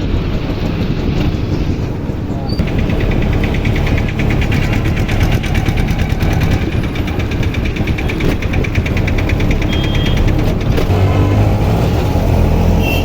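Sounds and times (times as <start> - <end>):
vehicle engine rumble: 0.0 - 13.0
fast even ticking: 2.6 - 11.2.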